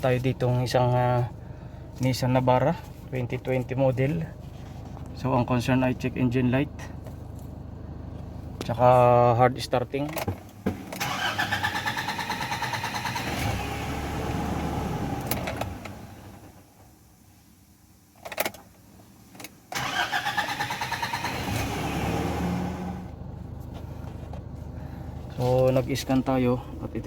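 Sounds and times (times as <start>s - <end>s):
diesel engine cranking and starting: 10.0s - 16.8s, 19.4s - 27.0s.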